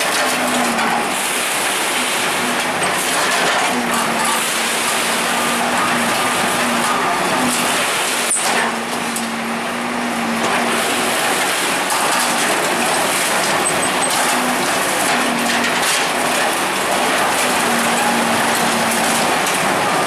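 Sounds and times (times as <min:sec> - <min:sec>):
bulldozer engine running: 0:00.0 - 0:20.0.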